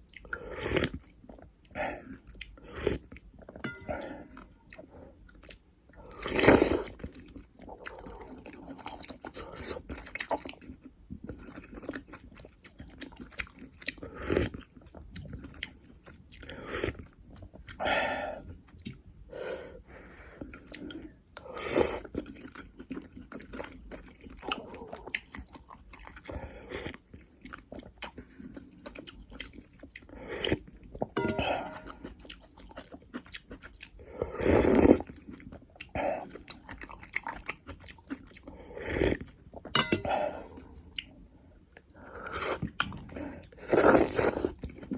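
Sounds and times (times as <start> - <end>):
close-up chewing and biting: 34.8 - 41.2.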